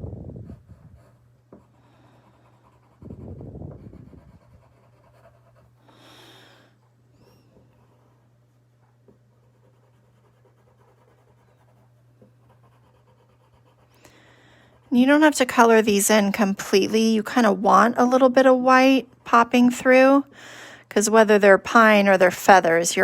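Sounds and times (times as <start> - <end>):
low rumble on microphone: 0.0 - 1.2, 2.9 - 5.0
low electrical hum: 0.0 - 23.0
pencil scratching on paper: 0.4 - 5.8, 7.7 - 13.9.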